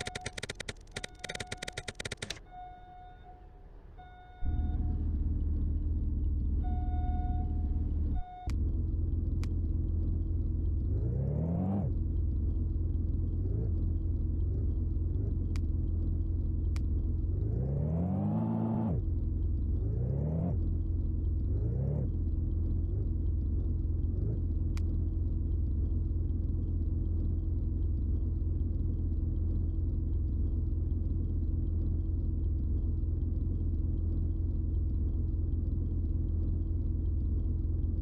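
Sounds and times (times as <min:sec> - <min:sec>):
sharp clicks: 0:00.0 - 0:02.4
electronic beep: 0:00.0 - 0:05.0
engine humming and revving: 0:00.0 - 0:38.0.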